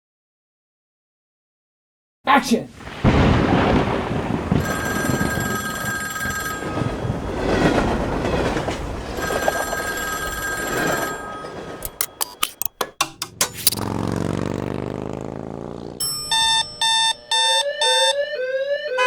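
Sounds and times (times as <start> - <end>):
train rumbling: 3.1 - 12.6
bell ringing: 4.6 - 7.1, 9.2 - 12.6, 16.0 - 18.2.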